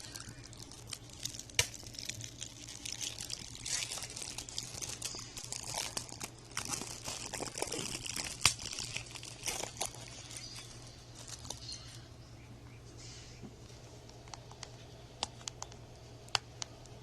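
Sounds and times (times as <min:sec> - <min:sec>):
plastic wrap crinkling: 0:00.0 - 0:12.0.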